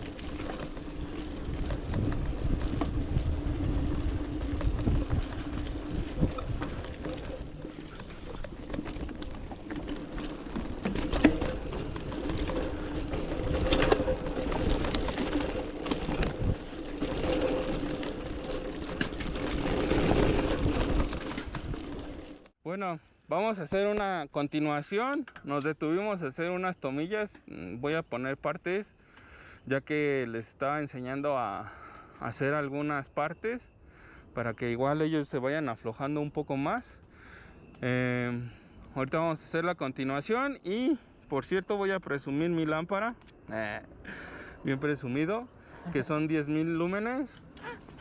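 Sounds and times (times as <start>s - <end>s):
bike knocks and rattles: 0.0s - 22.4s
bike rumble and wind on microphone: 0.0s - 22.5s.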